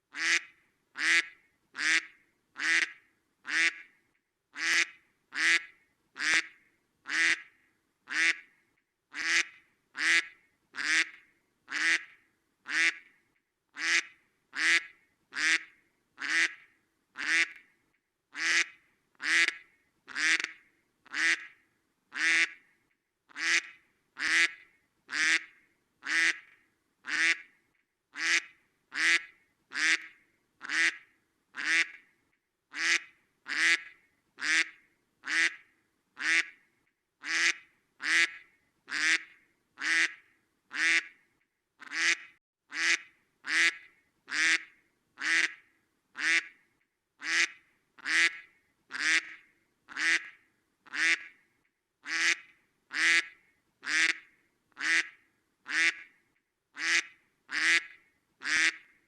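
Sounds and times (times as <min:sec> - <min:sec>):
duck quacking: 0:00.1 - 0:03.9, 0:04.6 - 0:06.5, 0:07.1 - 0:07.5, 0:08.1 - 0:08.5, 0:09.1 - 0:12.1, 0:12.7 - 0:13.0, 0:13.8 - 0:16.6, 0:17.2 - 0:17.6, 0:18.4 - 0:21.5, 0:22.1 - 0:22.6, 0:23.3 - 0:26.5, 0:27.1 - 0:27.5, 0:28.2 - 0:31.0, 0:31.6 - 0:32.0, 0:32.7 - 0:35.6, 0:36.2 - 0:36.6, 0:37.2 - 0:41.1, 0:41.8 - 0:45.6, 0:46.2 - 0:46.5, 0:47.2 - 0:51.3, 0:52.0 - 0:54.2, 0:54.8 - 0:56.1, 0:56.8 - 0:58.8.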